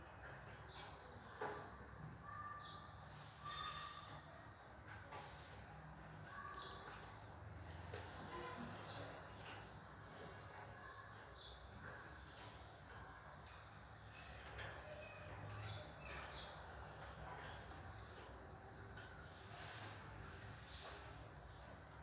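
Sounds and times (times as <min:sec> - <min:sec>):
canaries chirping: 0:06.4 - 0:07.1, 0:09.3 - 0:10.9, 0:14.4 - 0:19.8.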